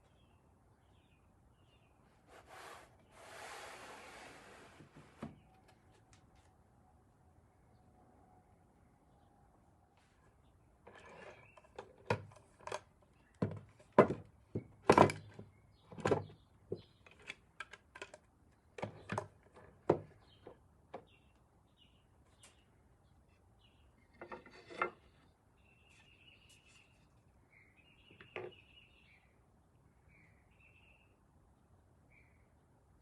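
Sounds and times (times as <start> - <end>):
knocks of wooden pieces: 11.9 - 18.2
faint bird chirps: 25.0 - 31.2, 32.0 - 32.7.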